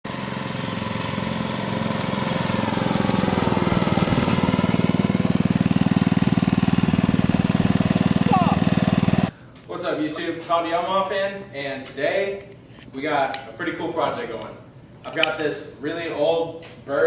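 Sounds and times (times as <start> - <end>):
small engine running: 0.1 - 9.3.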